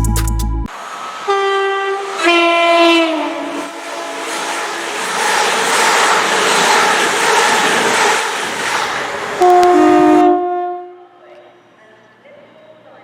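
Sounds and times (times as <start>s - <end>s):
passenger train rushing past: 0.7s - 13.0s
two-tone train horn: 1.2s - 4.3s, 9.4s - 11.7s.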